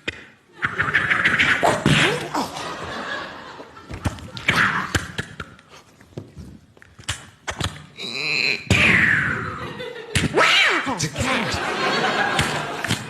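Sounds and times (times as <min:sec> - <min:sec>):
people laughing: 0:02.0 - 0:04.9, 0:09.4 - 0:13.0.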